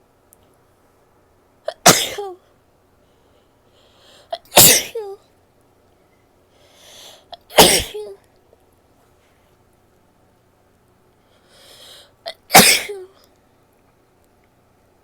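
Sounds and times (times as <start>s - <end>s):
woman sneezing: 1.7s - 2.4s, 4.4s - 5.2s, 7.5s - 8.2s, 12.5s - 13.2s
breathy inhale: 3.0s - 4.4s, 6.5s - 7.3s, 11.3s - 12.2s.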